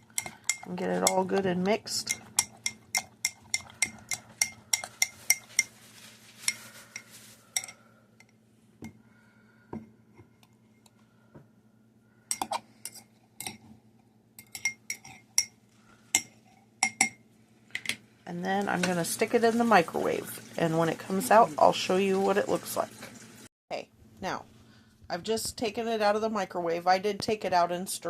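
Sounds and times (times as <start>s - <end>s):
fork whisking eggs in a dish: 0.0s - 7.9s, 12.3s - 13.6s.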